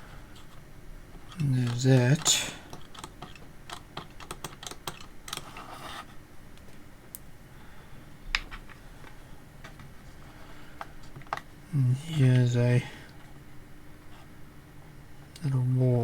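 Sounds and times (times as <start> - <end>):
light clicks and taps of plastic parts: 8.3 - 10.0, 10.8 - 11.5.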